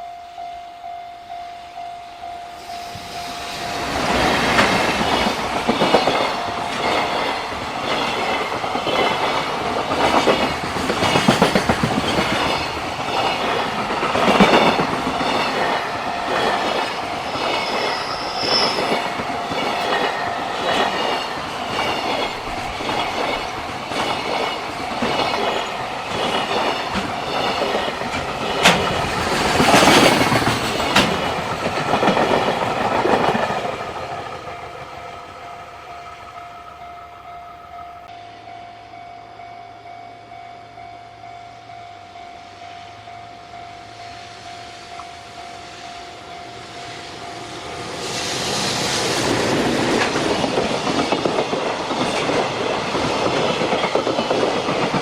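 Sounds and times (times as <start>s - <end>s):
train wheels clattering over rail joints: 3.7s - 18.0s, 18.6s - 34.5s, 47.9s - 55.0s
high wheel squeal: 14.6s - 22.4s.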